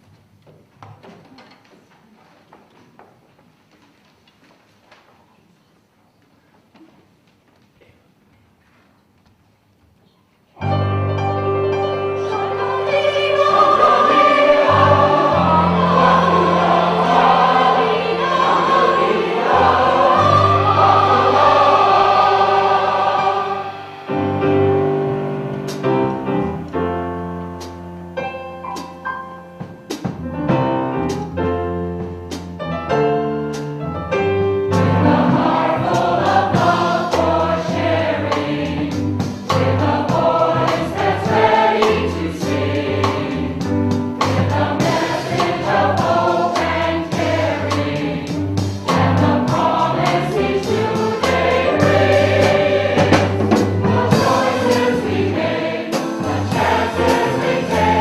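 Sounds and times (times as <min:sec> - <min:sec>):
mixed choir singing: 0:11.8 - 0:25.0, 0:34.7 - 0:58.0.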